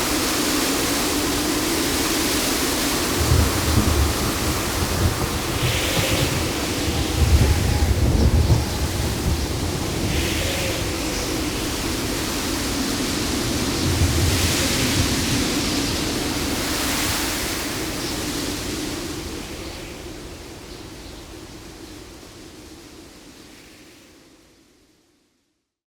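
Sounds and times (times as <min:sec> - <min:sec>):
surf rushing: 0:00.0 - 0:20.6
wind: 0:00.0 - 0:25.3.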